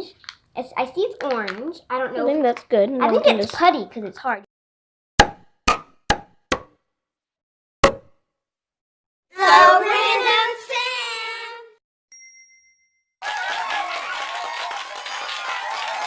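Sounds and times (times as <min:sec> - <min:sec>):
ringing dings: 0:12.1 - 0:13.2.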